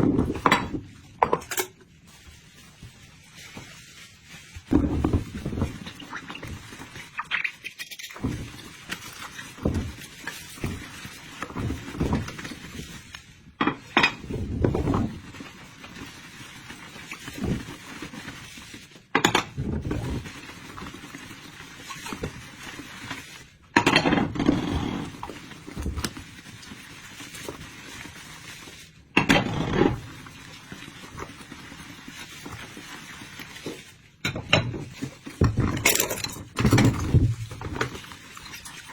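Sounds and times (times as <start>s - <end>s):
dishes and cutlery clinking: 0.3s - 1.8s.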